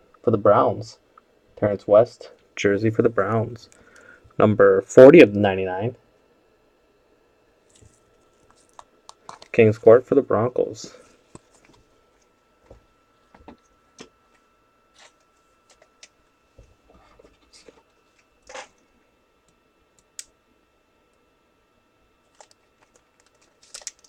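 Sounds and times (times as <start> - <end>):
small clicks and light scrapes: 7.7 - 9.6, 13.5 - 16.2.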